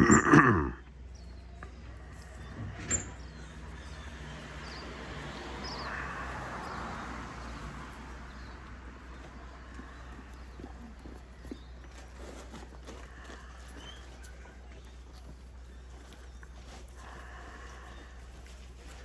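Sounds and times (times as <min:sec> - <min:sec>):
vehicle passing by: 0:01.7 - 0:11.9.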